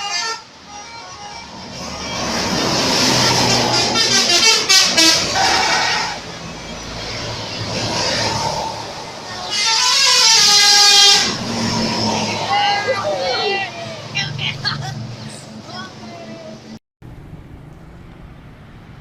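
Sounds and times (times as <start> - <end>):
musical bus horns tootling: 0.0 - 8.6, 9.2 - 15.1.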